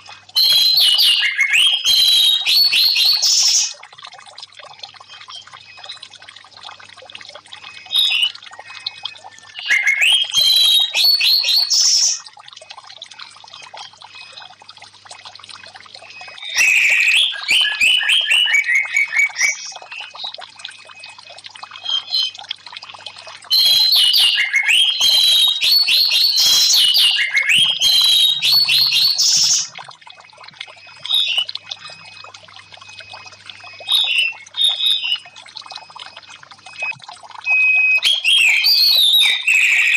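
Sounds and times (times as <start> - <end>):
trickling water: 0.0 - 39.9
bird calls: 7.7 - 12.2, 16.0 - 20.3, 33.7 - 35.4.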